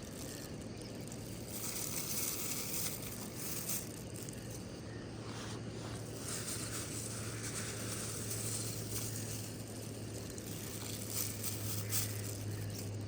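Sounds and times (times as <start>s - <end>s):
pot hissing and sizzling: 5.6s - 12.7s.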